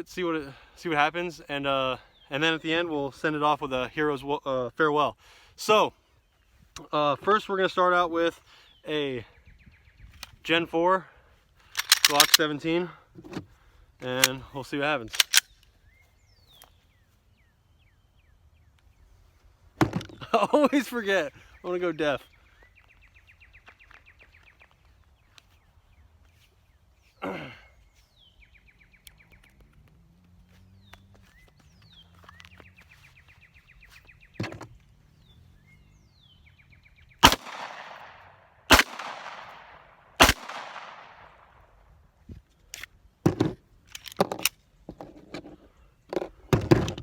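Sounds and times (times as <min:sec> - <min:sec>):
pistol shots echoing: 0:37.2 - 0:41.4.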